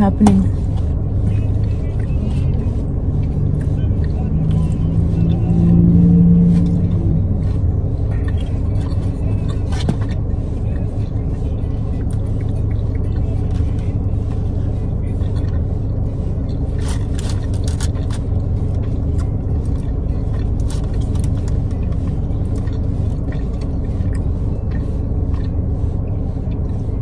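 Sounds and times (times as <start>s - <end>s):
steady low rumble: 0.0s - 27.0s
small clicks and scrapes: 16.8s - 19.9s.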